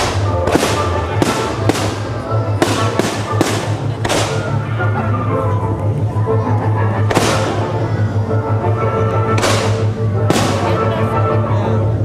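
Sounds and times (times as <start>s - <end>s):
fireworks bangs: 0.0s - 4.6s, 7.1s - 7.6s, 9.4s - 10.9s
music playing: 0.0s - 12.0s.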